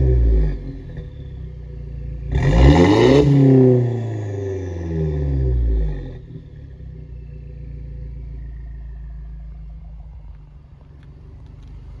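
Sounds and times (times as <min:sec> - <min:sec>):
car engine running: 0:00.0 - 0:12.0
faint whine: 0:07.0 - 0:12.0.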